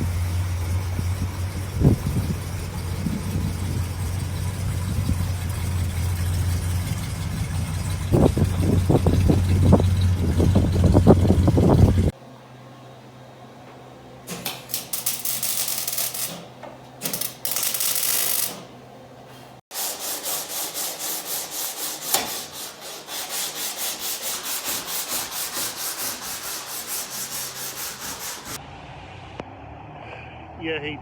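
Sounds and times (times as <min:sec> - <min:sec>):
sanding car body: 0:19.7 - 0:28.6.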